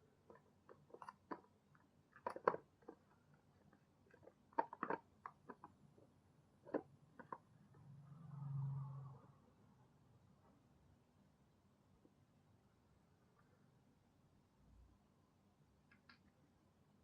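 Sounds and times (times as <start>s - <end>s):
small objects clicking and tapping: 0.2s - 5.8s.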